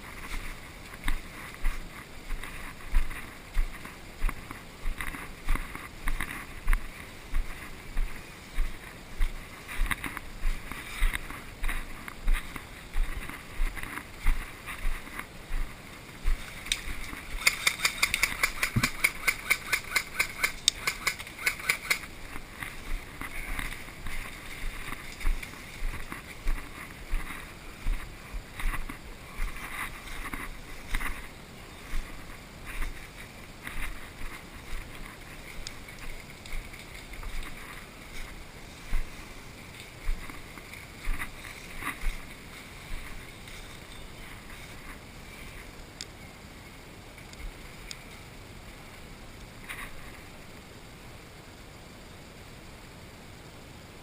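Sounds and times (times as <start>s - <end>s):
footsteps crunching through leaves: 0.0s - 19.2s, 20.2s - 45.2s
rapid sharp clicks: 16.7s - 22.1s.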